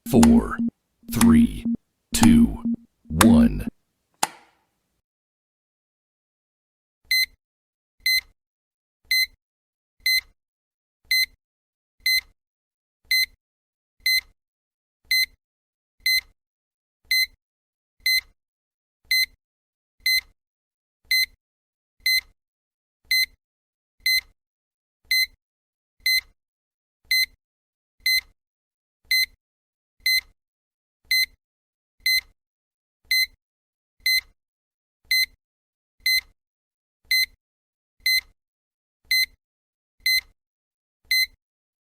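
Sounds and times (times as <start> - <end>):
short high-pitched electronic beep: 0.1 - 3.7.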